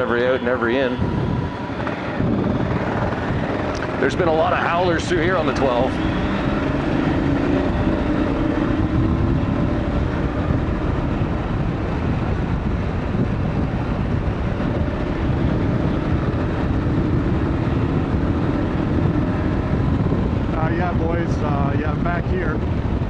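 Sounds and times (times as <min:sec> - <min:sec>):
motorcycle engine running: 0:00.0 - 0:23.0
wind rushing on microphone: 0:00.0 - 0:23.0.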